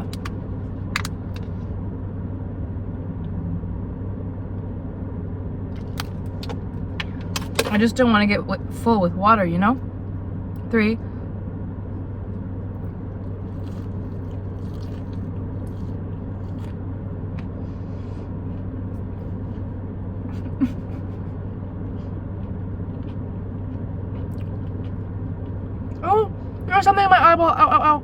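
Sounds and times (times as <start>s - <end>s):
idling car hum: 0.0s - 28.0s
chewing and mouth clicks: 12.7s - 16.8s, 22.0s - 26.0s.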